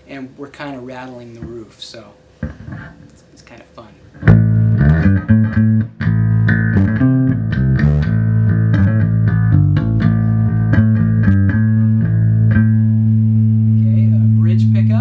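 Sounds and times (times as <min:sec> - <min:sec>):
electric bass plucked notes: 0:04.2 - 0:15.0.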